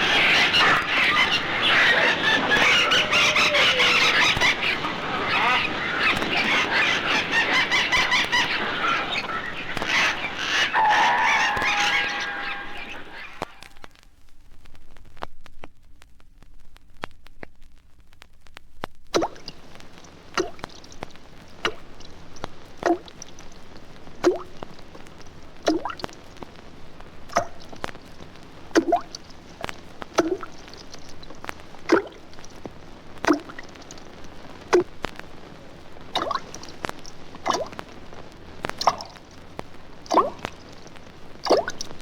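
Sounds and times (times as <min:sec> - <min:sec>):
vinyl record crackle: 0:00.0 - 0:42.0
water drops plopping into pool: 0:19.1 - 0:19.6, 0:22.8 - 0:23.4, 0:24.2 - 0:24.5, 0:25.6 - 0:26.2, 0:28.8 - 0:29.4, 0:30.2 - 0:30.8, 0:31.9 - 0:32.2, 0:33.3 - 0:34.0, 0:36.2 - 0:37.7, 0:38.7 - 0:39.2, 0:40.1 - 0:40.6, 0:41.4 - 0:41.9.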